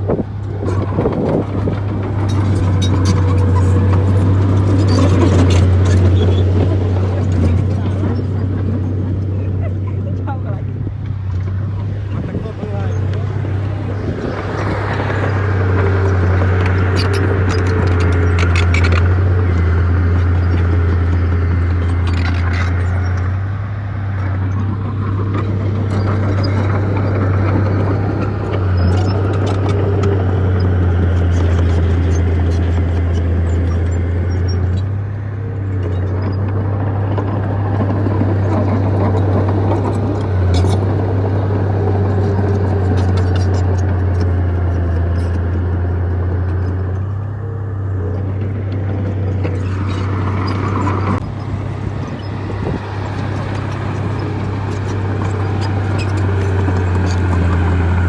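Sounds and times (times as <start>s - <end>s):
bulldozer diesel engine droning: 0.0s - 58.0s.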